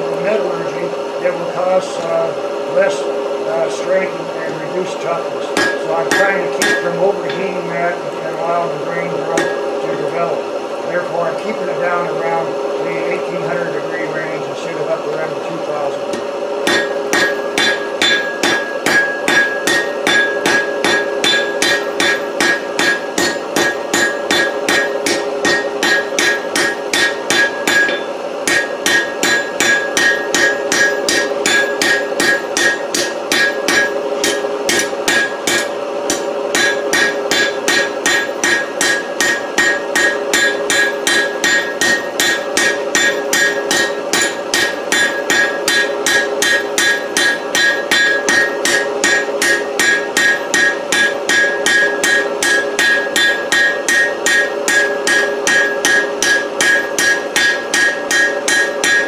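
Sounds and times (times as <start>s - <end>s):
hammer striking hot steel on anvil: 5.5s - 7.7s, 9.3s - 9.7s, 16.1s - 59.0s
anvil ringing: 5.6s - 7.6s, 9.3s - 9.7s, 16.1s - 59.0s.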